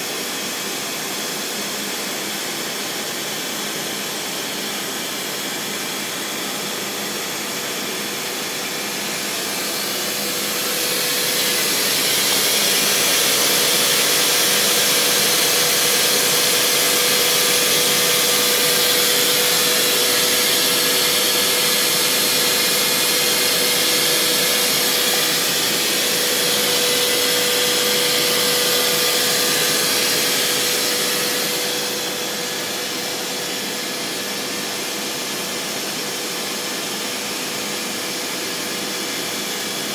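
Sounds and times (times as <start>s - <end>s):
machining center whirring hiss: 7.0s - 34.4s.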